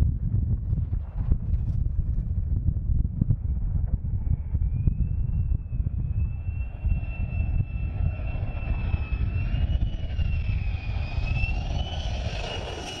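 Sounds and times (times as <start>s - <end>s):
jet engine running: 4.3s - 13.0s.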